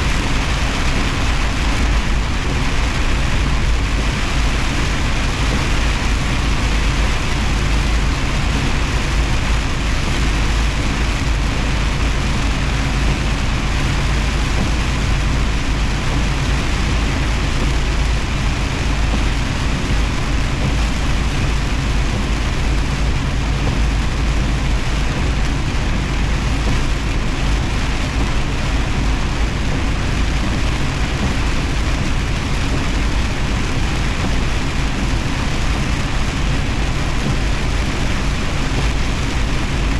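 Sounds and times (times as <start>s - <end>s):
truck engine drone: 0.0s - 39.9s
tyre and road noise: 0.0s - 39.9s.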